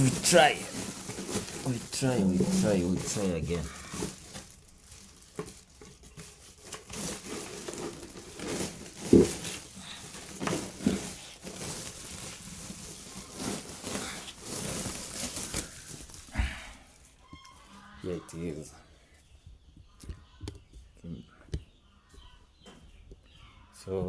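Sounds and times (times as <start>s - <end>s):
rustling handling noises: 0.0s - 17.7s.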